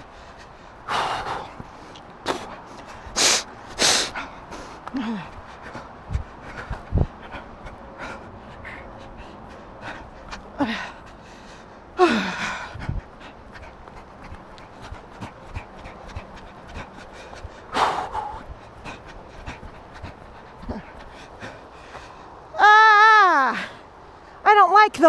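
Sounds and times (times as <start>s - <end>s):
runner breathing hard: 0.0s - 22.5s.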